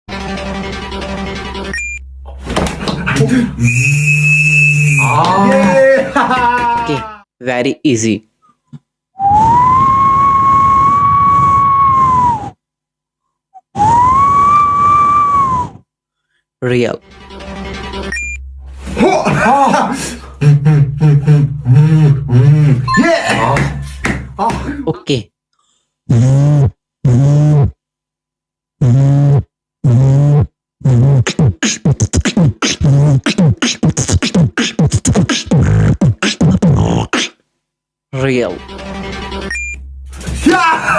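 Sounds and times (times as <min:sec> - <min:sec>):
whistle-like high tone: 0:03.6 - 0:05.3, 0:09.2 - 0:12.6, 0:13.6 - 0:15.8, 0:18.1 - 0:18.4
beatboxer vocal sound effects: 0:20.2 - 0:24.7, 0:26.1 - 0:27.8, 0:28.8 - 0:37.4
mouth clicks: 0:28.8 - 0:37.4.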